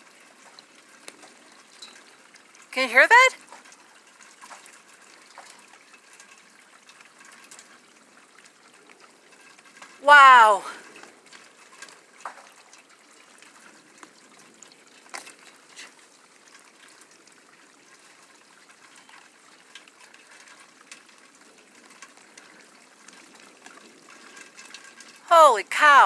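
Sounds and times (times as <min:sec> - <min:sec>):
water trickling: 0:00.0 - 0:02.7, 0:03.4 - 0:10.0, 0:11.0 - 0:25.2.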